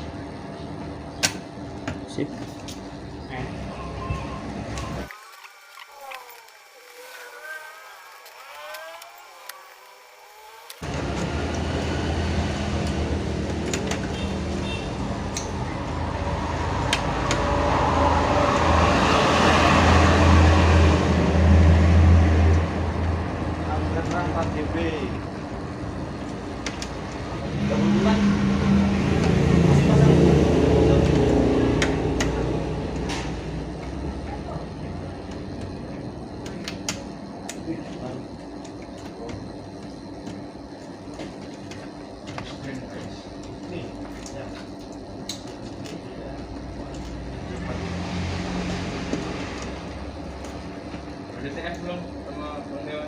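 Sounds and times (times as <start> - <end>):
vehicle engine passing: 7.0 - 25.4, 27.2 - 36.4, 46.0 - 52.0.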